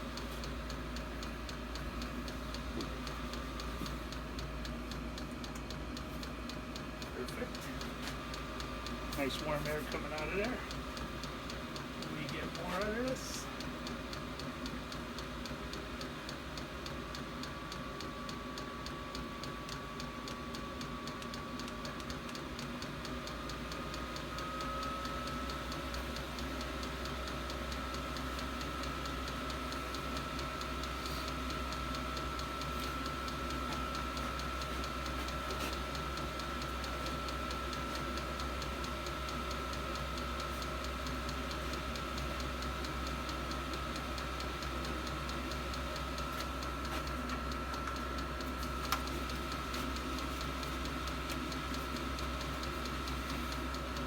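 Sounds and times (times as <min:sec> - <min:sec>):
heater blower fan whine: 0:00.0 - 0:54.0
fuel pump ticking: 0:00.1 - 0:18.9.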